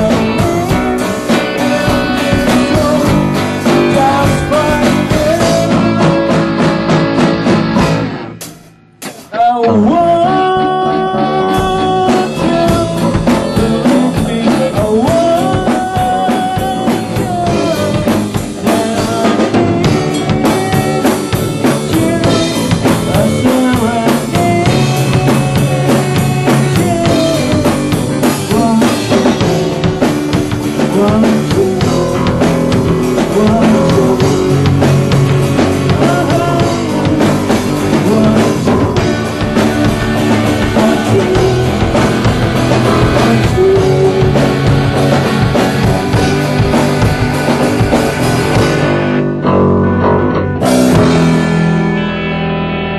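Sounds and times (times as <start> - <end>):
drum kit: 0.0 - 52.9
rock band playing live: 0.0 - 52.9.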